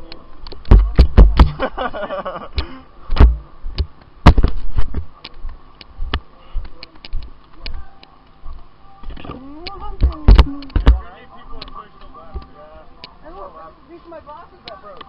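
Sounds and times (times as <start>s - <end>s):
airsoft shots and bb hits: 0.6s - 1.7s, 3.2s - 4.6s.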